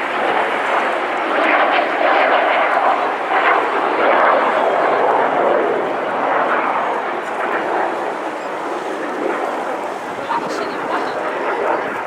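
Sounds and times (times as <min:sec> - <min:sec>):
aircraft flying past: 0:00.0 - 0:12.0.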